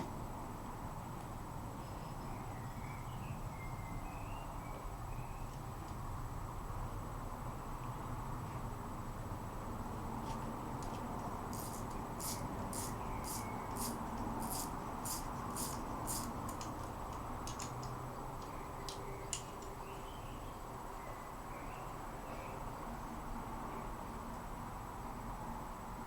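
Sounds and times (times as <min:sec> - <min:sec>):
short hissy strokes on metal: 0:11.5 - 0:16.4
sharp clicks: 0:11.6 - 0:19.8.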